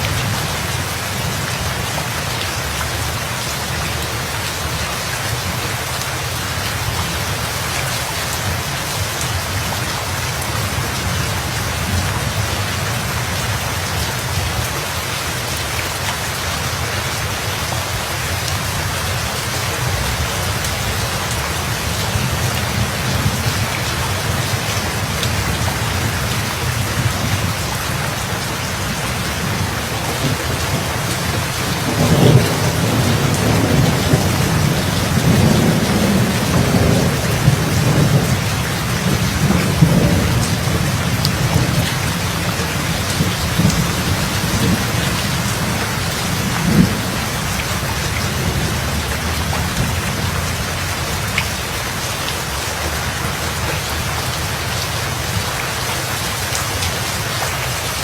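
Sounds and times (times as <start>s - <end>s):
heavy rain pouring: 0.0s - 58.0s
thunder rumbling: 19.8s - 52.0s.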